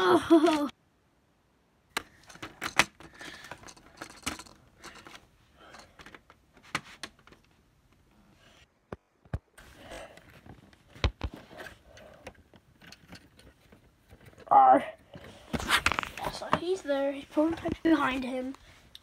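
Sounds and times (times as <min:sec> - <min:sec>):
plastic pieces clicking and rattling: 0:02.0 - 0:06.4.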